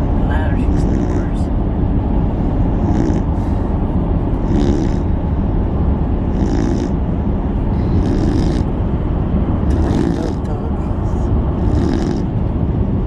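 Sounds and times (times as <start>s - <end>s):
truck road rumble: 0.0s - 13.0s
dog snoring: 0.5s - 1.5s, 2.7s - 3.6s, 4.4s - 5.2s, 6.2s - 7.0s, 7.7s - 8.7s, 9.6s - 10.5s, 11.5s - 12.4s.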